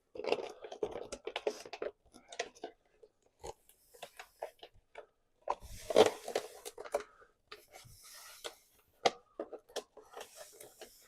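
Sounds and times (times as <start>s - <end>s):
vinyl decal rubbing and crinkling: 5.6s - 6.8s.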